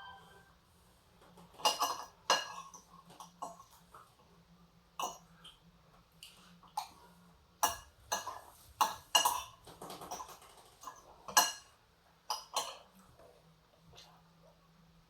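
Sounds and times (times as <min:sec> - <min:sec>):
cutlery clinking on plate: 0:01.6 - 0:03.6.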